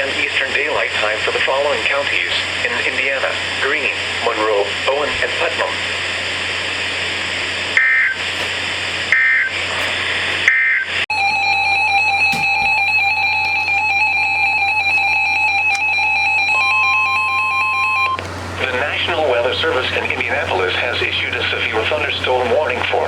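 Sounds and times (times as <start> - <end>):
radio hiss: 0.0 - 11.0, 18.2 - 23.0
data-burst squawks: 7.8 - 8.2
steady electronic alert tone: 11.1 - 18.2
higher steady tone: 11.1 - 22.1.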